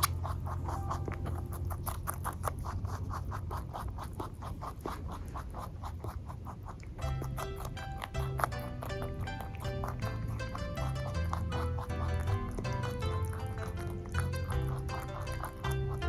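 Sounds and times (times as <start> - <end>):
soft background music: 0.0 - 3.1, 7.0 - 16.0
rabbit chewing food: 0.0 - 16.0.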